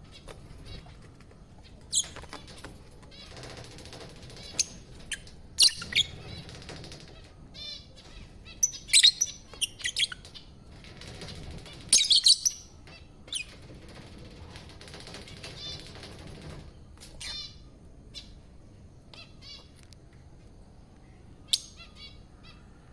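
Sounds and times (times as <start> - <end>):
lovebirds chirping: 7.6 - 10.6.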